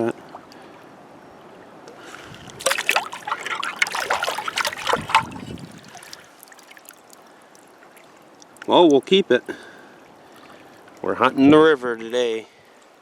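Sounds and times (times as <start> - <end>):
stream flowing: 0.0 - 11.7
water splashing: 2.0 - 11.0.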